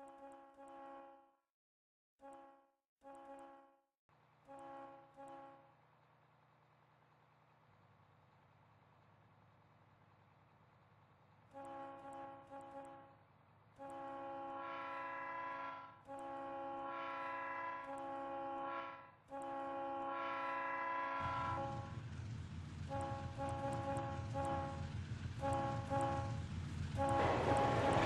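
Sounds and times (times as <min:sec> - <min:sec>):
train horn blasts: 0:00.0 - 0:01.3, 0:02.2 - 0:03.8, 0:04.4 - 0:05.7, 0:11.5 - 0:13.2, 0:13.8 - 0:28.0
train rumbling: 0:19.6 - 0:28.0.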